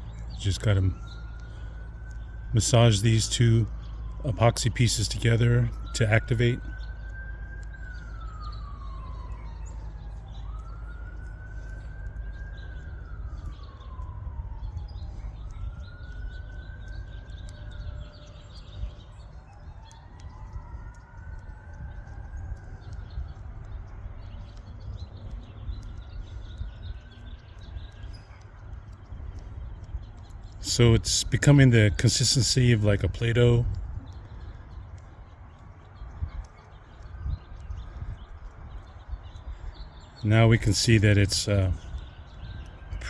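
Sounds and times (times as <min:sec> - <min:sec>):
emergency vehicle siren wailing: 0:00.0 - 0:43.0.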